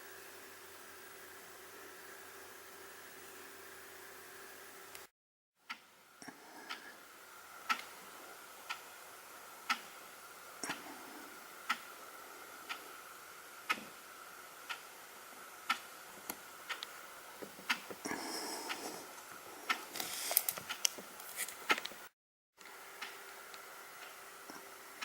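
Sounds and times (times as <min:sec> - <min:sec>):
alarm clock ticking: 0:09.7 - 0:10.0.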